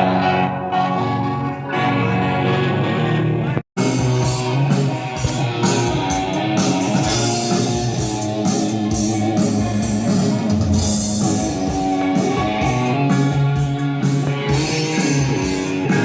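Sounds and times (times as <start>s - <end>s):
bass guitar: 0.0s - 16.0s
drum kit: 0.0s - 16.0s
electric guitar with effects: 0.0s - 16.0s.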